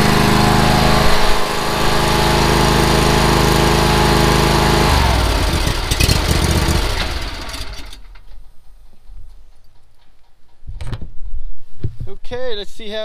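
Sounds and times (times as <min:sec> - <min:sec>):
lawn mower running: 0:00.0 - 0:08.4
mower winding down with rattling: 0:00.0 - 0:08.7.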